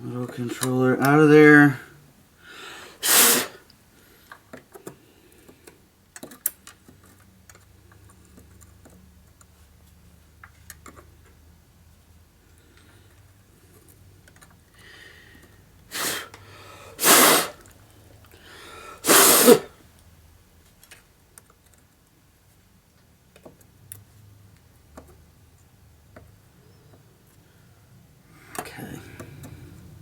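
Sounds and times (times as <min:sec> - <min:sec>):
man coughing: 0:19.1 - 0:19.7.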